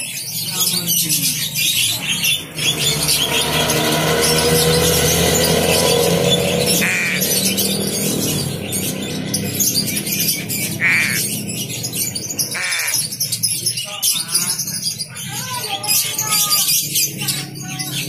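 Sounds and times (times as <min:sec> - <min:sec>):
young crow calling: 0:06.7 - 0:08.1, 0:10.6 - 0:11.5, 0:12.5 - 0:13.3.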